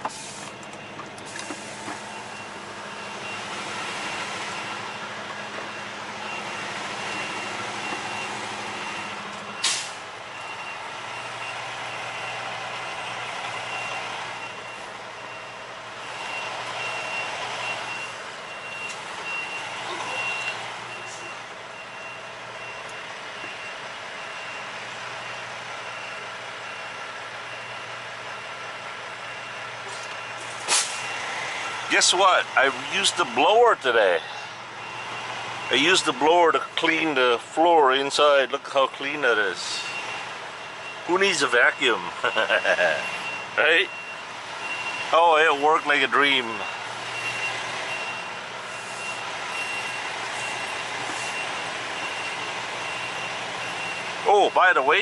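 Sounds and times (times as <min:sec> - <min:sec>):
diesel truck engine idling: 0:00.0 - 0:55.0
backup alarm beeping: 0:00.2 - 0:05.1, 0:05.7 - 0:27.9, 0:39.0 - 0:55.0.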